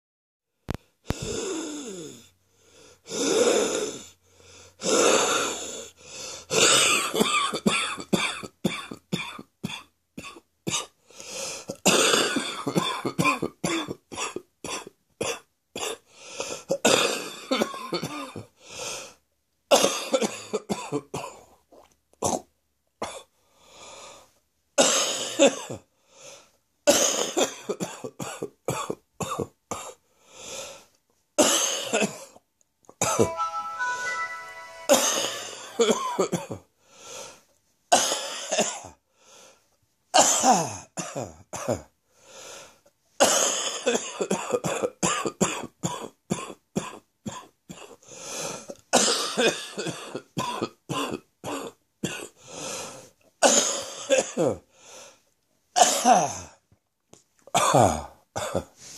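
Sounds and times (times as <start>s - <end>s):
person coughing: 11.7s - 16.0s, 40.2s - 41.9s, 53.4s - 54.6s, 57.6s - 58.7s
throat clearing: 22.2s - 23.3s, 53.5s - 54.6s, 57.5s - 58.8s.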